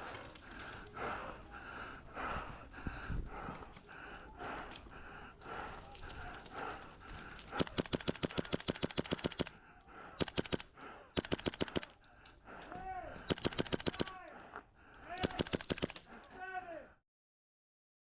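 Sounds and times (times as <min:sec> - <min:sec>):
faint scattered shots: 0:05.5 - 0:12.1, 0:13.1 - 0:16.4
airsoft gun automatic bursts: 0:06.4 - 0:12.0, 0:13.2 - 0:14.2, 0:15.1 - 0:16.2.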